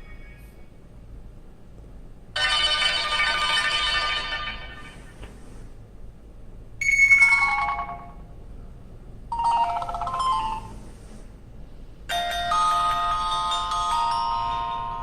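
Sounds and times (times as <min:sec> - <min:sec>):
phone ringtones: 0:02.4 - 0:04.9, 0:06.8 - 0:08.2, 0:09.3 - 0:10.8.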